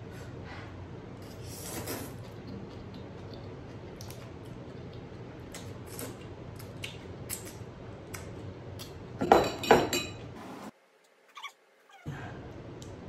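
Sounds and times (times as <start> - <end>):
person chewing noodles: 1.4 - 9.0
utensil clinking against dish: 9.2 - 10.3.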